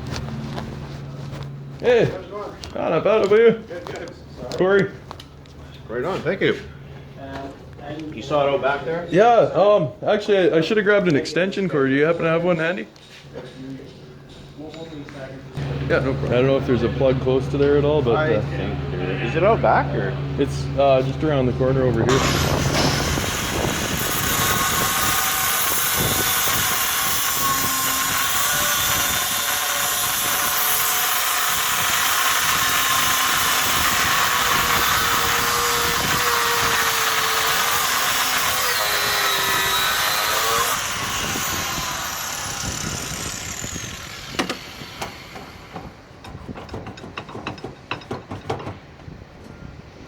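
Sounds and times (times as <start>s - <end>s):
power tool winding down whine: 22.1s - 45.8s
power tool cutting metal: 22.1s - 46.0s.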